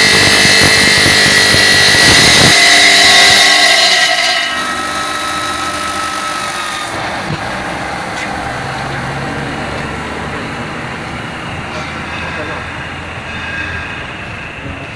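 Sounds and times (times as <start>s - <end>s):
saw high ringing tone: 0.0s - 7.0s, 11.1s - 14.9s
machine hum: 0.0s - 14.9s.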